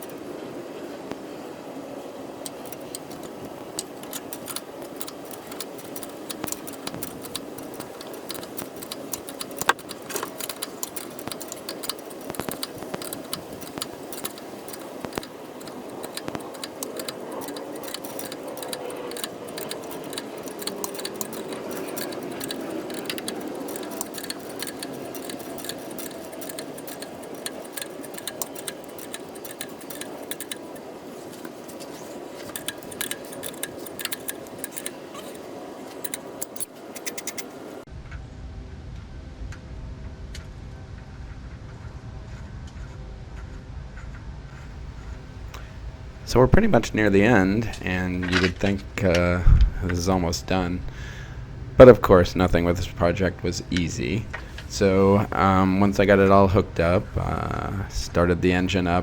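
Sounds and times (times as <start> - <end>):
steady low hum: 0.0 - 59.0
tools and metal parts clinking: 2.3 - 37.8, 46.3 - 51.0.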